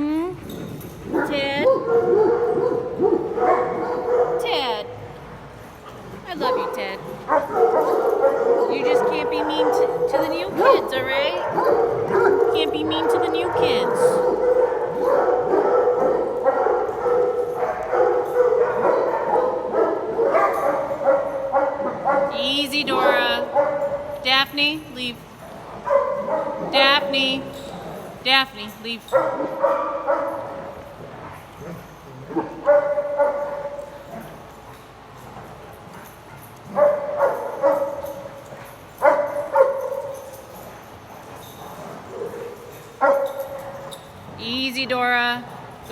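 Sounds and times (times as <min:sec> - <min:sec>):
dogs barking and yipping: 0:00.5 - 0:24.3, 0:25.2 - 0:45.9.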